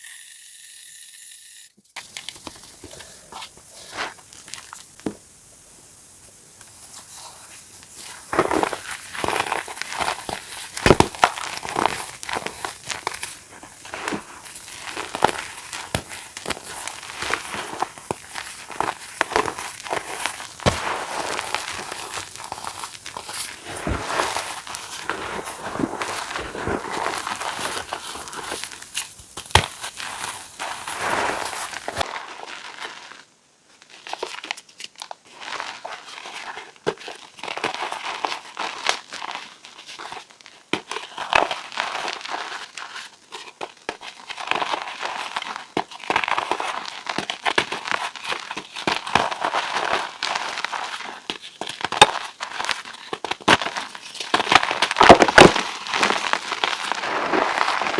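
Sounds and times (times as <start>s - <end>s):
chalk blocks crunching: 6.2s - 33.2s, 40.8s - 57.9s.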